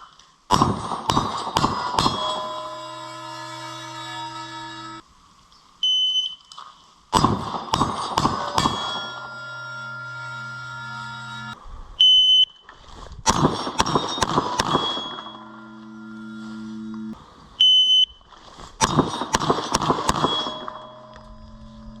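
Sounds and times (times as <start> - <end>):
rapid gunshots: 0.5 - 2.4, 7.2 - 9.1, 13.3 - 15.3, 18.8 - 20.8
steel plates ringing: 0.5 - 5.0, 7.2 - 11.6, 13.3 - 17.2, 18.8 - 22.0
shot timer beep: 13.7 - 18.0, 19.9 - 22.0.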